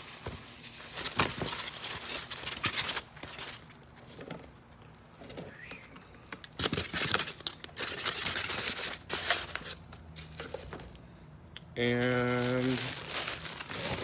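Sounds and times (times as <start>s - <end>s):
packaging crinkling and rustling: 0.0s - 4.5s, 6.4s - 11.0s, 11.8s - 14.0s.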